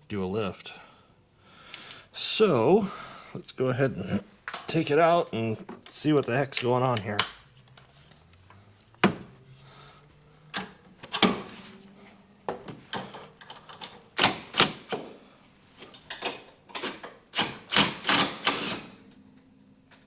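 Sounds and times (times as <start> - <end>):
metal tools clinking and knocking: 15.8 - 17.1.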